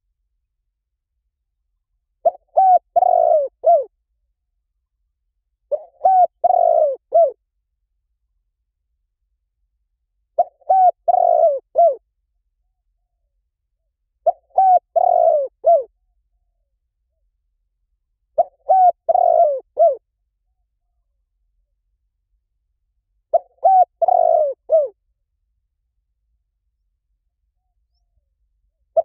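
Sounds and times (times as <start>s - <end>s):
dove cooing: 2.2s - 3.9s, 5.7s - 7.4s, 10.4s - 12.0s, 14.2s - 15.9s, 18.4s - 20.0s, 23.3s - 25.0s.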